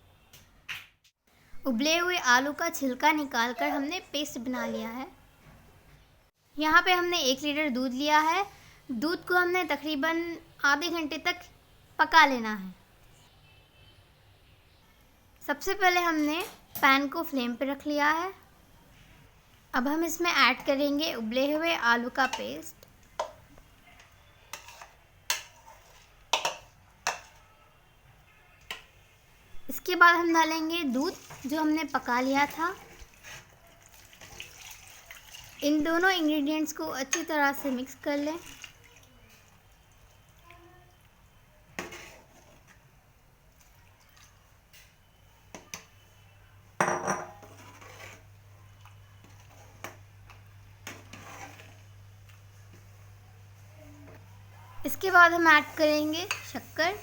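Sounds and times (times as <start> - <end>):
utensil stirring in metal pan: 20.5 - 29.1, 30.0 - 41.0, 41.6 - 46.2, 46.8 - 53.2, 55.0 - 57.0
spoon knocking against cookware: 26.3 - 27.4, 46.8 - 47.5.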